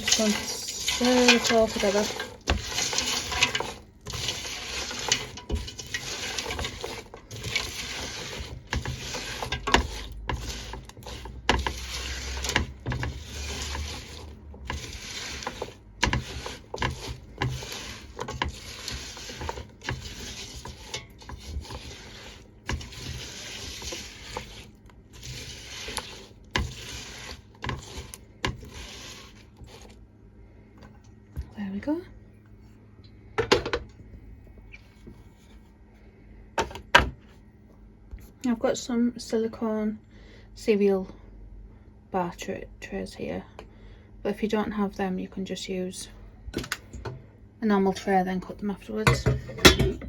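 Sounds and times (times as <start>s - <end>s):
spoon stirring sticky mix: 0.0s - 30.1s.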